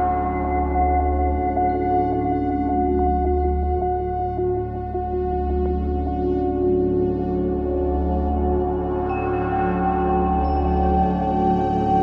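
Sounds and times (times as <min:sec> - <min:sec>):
ambient drone music: 0:07.4 - 0:12.0.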